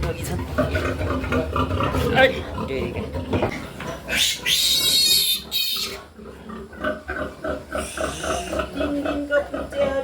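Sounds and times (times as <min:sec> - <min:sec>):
piglet squealing: 0:04.1 - 0:06.1, 0:07.7 - 0:09.2.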